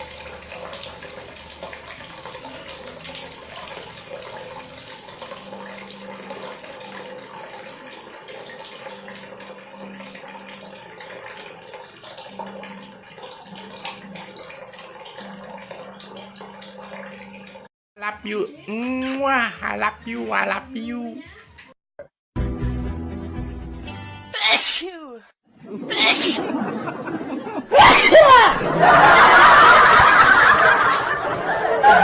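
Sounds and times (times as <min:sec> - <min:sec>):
water running from a tap: 0:00.0 - 0:18.3.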